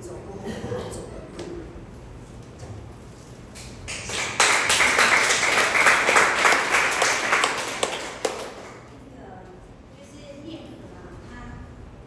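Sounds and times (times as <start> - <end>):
audience applauding: 3.8 - 8.8.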